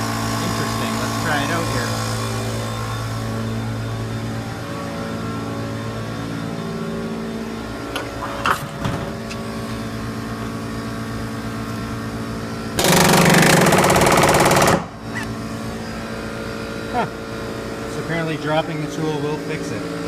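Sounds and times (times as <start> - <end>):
steady engine-like drone: 0.0 - 20.0
palm nailer hammering: 12.8 - 15.0.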